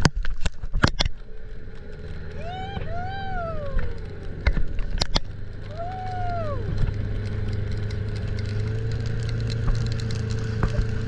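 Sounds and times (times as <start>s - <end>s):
outboard motor running: 0.0s - 11.0s.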